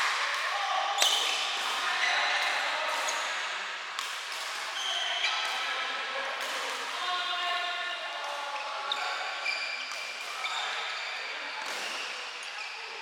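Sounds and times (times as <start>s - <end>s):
shoes squeaking on court: 1.0s - 1.3s.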